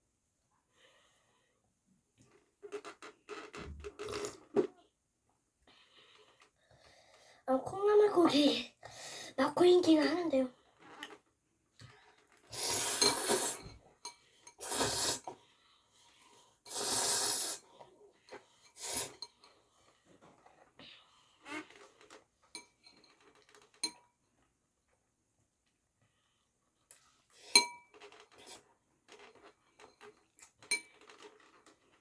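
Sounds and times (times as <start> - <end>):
loud noodle slurps: 4.0 - 4.5, 12.5 - 13.7, 14.6 - 15.3, 16.7 - 17.7, 18.8 - 19.2.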